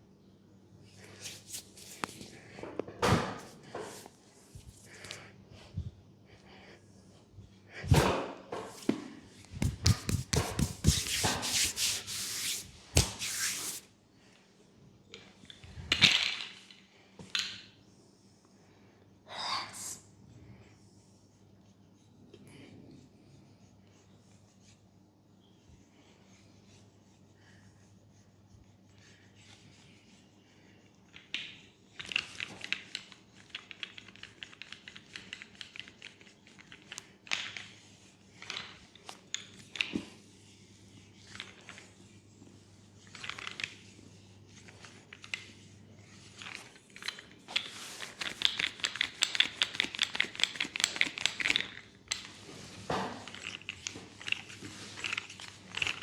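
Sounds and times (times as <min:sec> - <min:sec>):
scratchy rustling strokes: 0:08.8 - 0:13.9.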